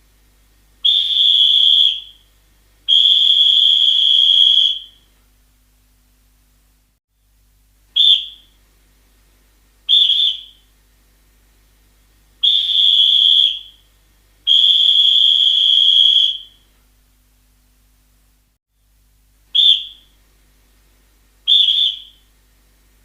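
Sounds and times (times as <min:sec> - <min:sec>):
referee's whistle blasts: 0:02.9 - 0:05.0, 0:14.5 - 0:16.6, 0:21.5 - 0:22.2.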